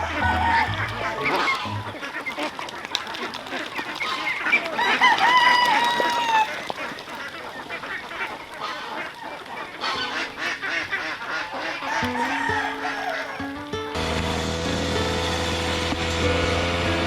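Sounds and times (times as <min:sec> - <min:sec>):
background music: 0:00.0 - 0:02.0, 0:09.9 - 0:17.0
fowl honking: 0:00.0 - 0:14.0
farmyard background: 0:00.0 - 0:17.0.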